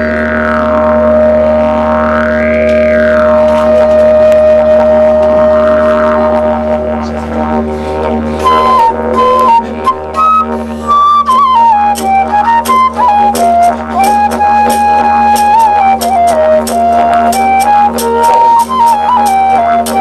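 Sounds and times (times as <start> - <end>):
flute-like melody: 0.0 - 20.0
low wind instrument drone: 0.0 - 20.0.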